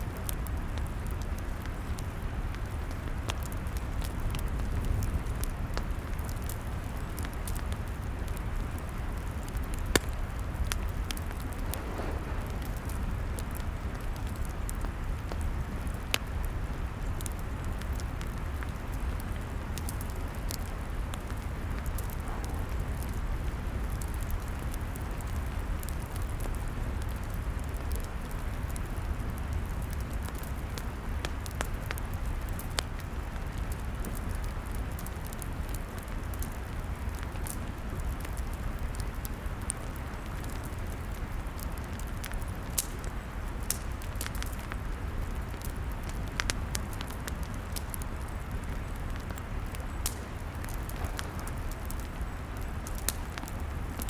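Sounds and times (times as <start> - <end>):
log fire crackling and popping: 0.0 - 54.0
steady low rumble: 9.8 - 25.8, 47.4 - 54.0.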